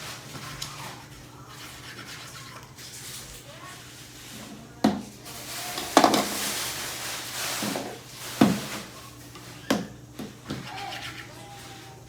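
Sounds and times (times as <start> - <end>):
rustling hiss: 3.0 - 9.7.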